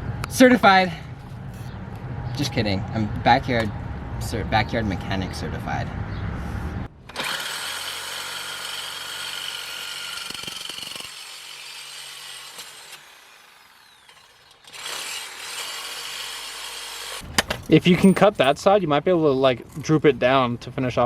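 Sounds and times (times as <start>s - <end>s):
power saw cutting metal pipe: 7.1s - 17.2s.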